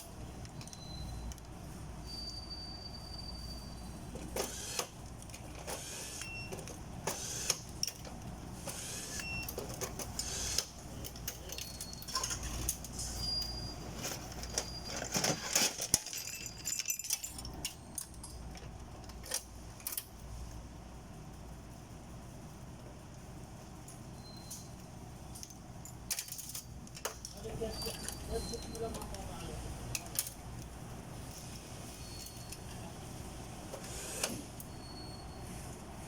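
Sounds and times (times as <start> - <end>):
small metal parts clinking: 9.2 - 20.2, 25.3 - 29.3.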